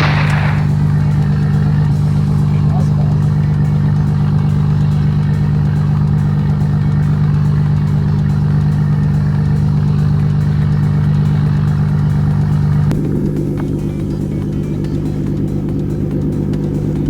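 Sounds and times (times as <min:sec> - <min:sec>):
boat engine running: 0:00.0 - 0:17.0.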